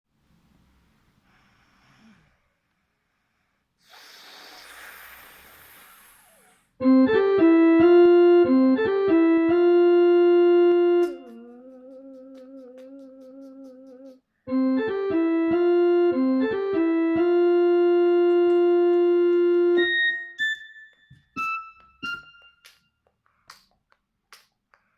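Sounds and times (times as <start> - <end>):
faint hiss: 0.2 - 6.8
phone ringtone melody: 6.8 - 11.3, 14.5 - 22.6.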